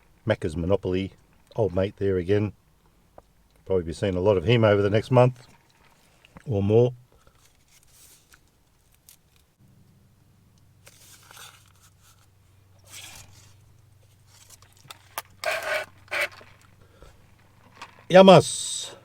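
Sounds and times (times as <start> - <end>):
paper tearing and scraping: 10.8 - 12.2, 12.8 - 13.6, 14.3 - 16.5.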